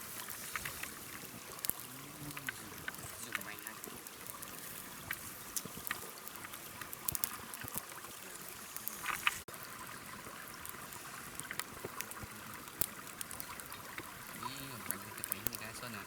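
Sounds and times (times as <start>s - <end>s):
water trickling and splashing: 0.0s - 16.0s
small clicks and taps: 0.4s - 7.9s.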